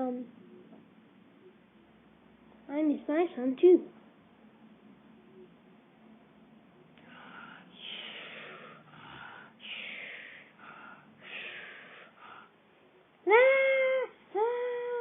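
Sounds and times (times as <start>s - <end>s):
person crying wail: 13.3s - 15.0s
person sobbing: 13.3s - 15.0s.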